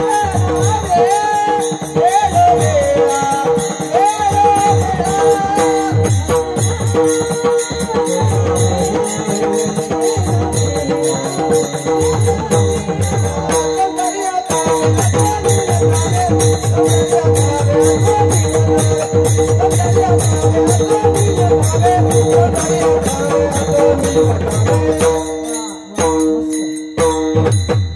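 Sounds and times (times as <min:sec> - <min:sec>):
chanted melody: 0:00.0 - 0:27.9
drum beat: 0:00.0 - 0:27.9
jingling hand percussion: 0:00.0 - 0:27.9.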